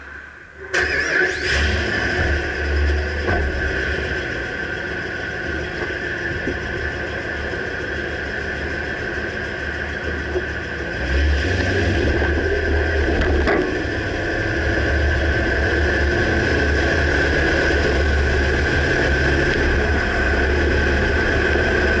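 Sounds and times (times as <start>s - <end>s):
high-pitched engine whine: 0.0s - 22.0s
truck engine idling: 2.0s - 22.0s.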